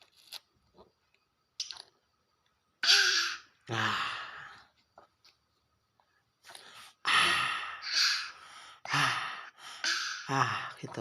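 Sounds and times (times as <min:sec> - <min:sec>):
child coughing: 0:02.8 - 0:03.5, 0:09.8 - 0:10.4.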